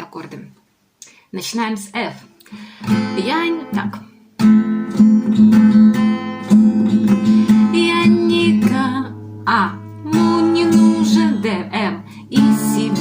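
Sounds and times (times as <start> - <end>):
acoustic guitar strumming: 2.6 - 13.0
person singing: 7.2 - 13.0.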